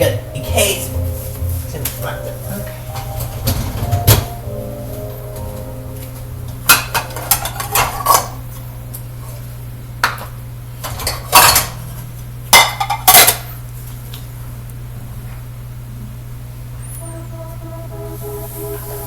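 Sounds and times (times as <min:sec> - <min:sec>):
steady low hum: 0:00.0 - 0:11.1, 0:15.8 - 0:19.0
dishes and cutlery clattering: 0:10.8 - 0:11.8.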